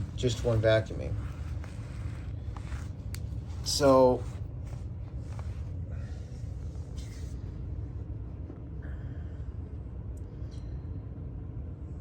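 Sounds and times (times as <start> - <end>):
faint rustles: 0.0 - 8.6
low background rumble: 0.0 - 12.0.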